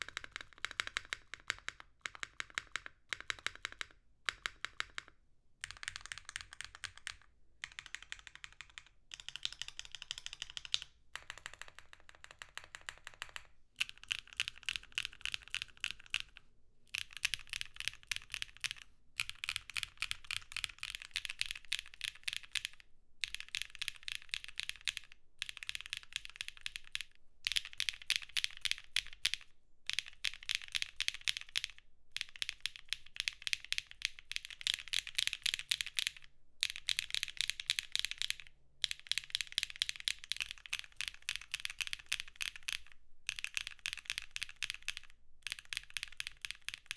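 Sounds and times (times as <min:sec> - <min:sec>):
fast typing on mechanical keyboard: 0:00.0 - 0:46.9.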